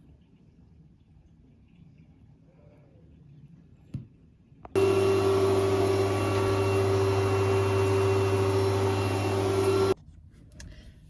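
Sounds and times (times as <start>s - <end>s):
shower pump motor humming: 4.8s - 10.0s.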